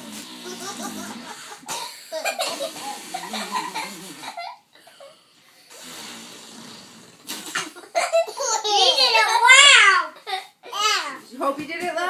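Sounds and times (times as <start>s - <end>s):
children laughing and giggling: 0.4s - 5.1s, 7.5s - 10.9s.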